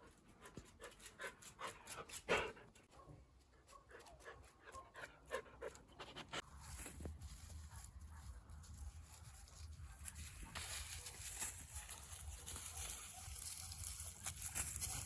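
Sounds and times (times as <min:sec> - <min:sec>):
animal panting: 0:00.0 - 0:02.9, 0:03.5 - 0:06.4.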